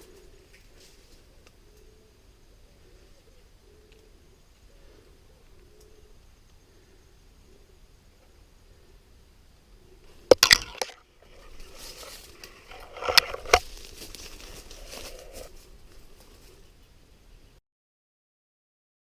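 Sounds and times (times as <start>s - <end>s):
twigs snapping: 10.3s - 15.5s
brush crunching and rustling: 10.3s - 16.7s.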